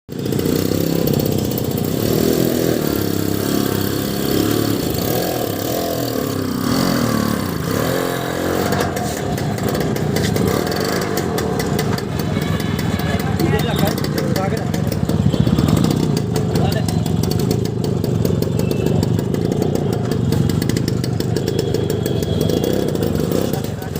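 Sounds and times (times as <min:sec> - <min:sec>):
scooter engine revving: 0:00.1 - 0:23.9
fast ticking: 0:09.4 - 0:23.9.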